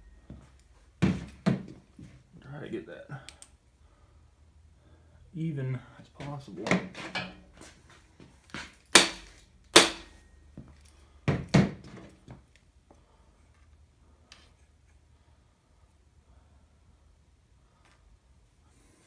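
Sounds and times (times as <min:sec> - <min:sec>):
hammer striking metal: 0:09.0 - 0:10.2.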